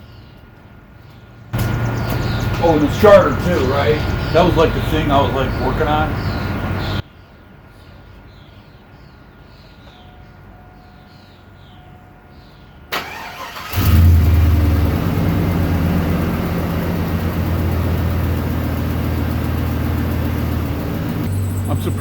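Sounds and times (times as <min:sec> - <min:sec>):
truck engine starting and idling: 0:01.6 - 0:07.0, 0:12.9 - 0:22.0.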